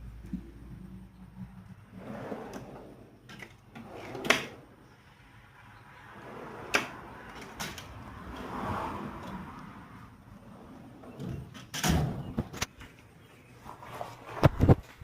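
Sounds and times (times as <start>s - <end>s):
metal drawers rolling on slides: 1.9s - 4.8s, 6.0s - 9.6s, 10.3s - 12.6s
drawers clacking shut: 2.3s - 4.6s, 6.5s - 7.9s, 11.0s - 12.7s.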